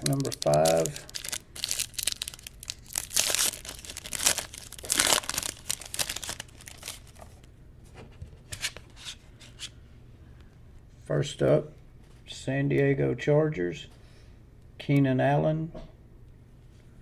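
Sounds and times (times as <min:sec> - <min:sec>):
wrapper rustling: 0:00.0 - 0:07.5
wrapper tearing and crackling: 0:00.0 - 0:07.5.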